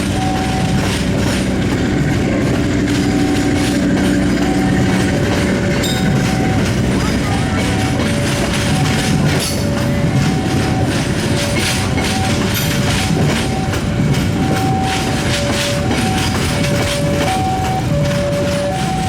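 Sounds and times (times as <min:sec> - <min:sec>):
train wheels rumbling and clattering: 0:00.0 - 0:19.0
two-tone electronic warning alarm: 0:00.0 - 0:19.0.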